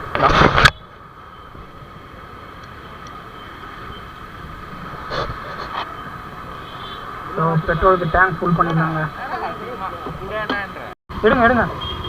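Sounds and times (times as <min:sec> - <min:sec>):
motorcycle road noise: 0:00.0 - 0:12.0.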